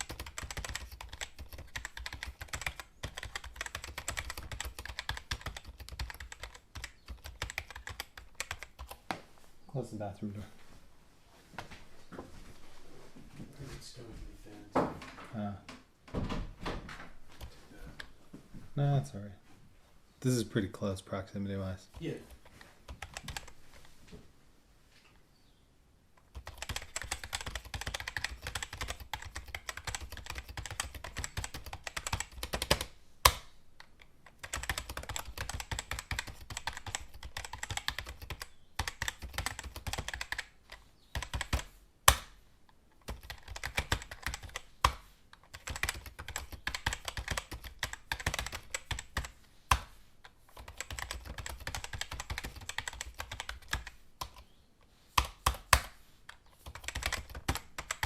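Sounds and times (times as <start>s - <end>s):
keyboard typing clicks: 0.0s - 9.0s, 21.9s - 23.6s, 26.2s - 42.3s, 43.0s - 49.9s, 50.6s - 54.4s, 56.6s - 58.0s.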